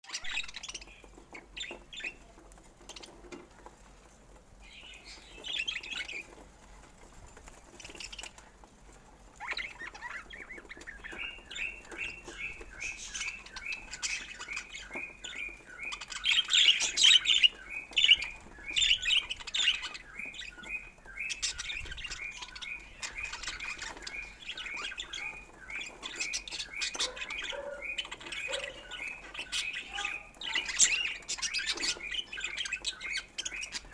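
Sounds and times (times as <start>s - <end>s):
budgerigars chirping and chattering: 0.0s - 33.9s.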